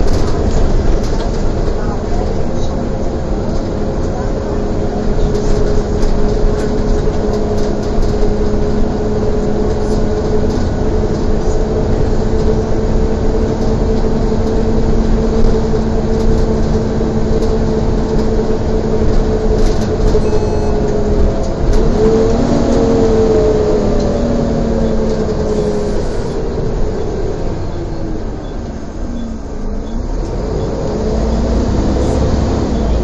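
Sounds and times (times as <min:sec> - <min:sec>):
bus whine: 0:00.0 - 0:33.0
engine and road rumble: 0:00.0 - 0:33.0.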